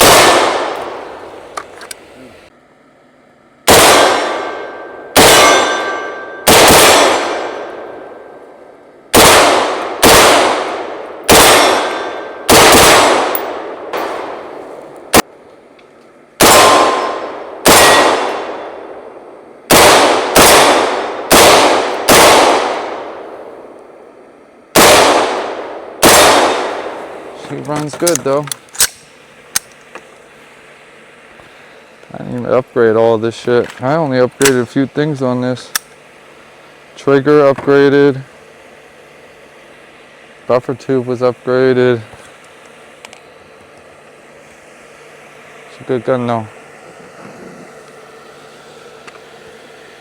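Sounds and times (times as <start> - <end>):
rifle shots: 0.0 - 1.1, 3.7 - 7.9, 9.1 - 14.5, 16.4 - 18.9, 19.7 - 23.2, 24.8 - 27.0.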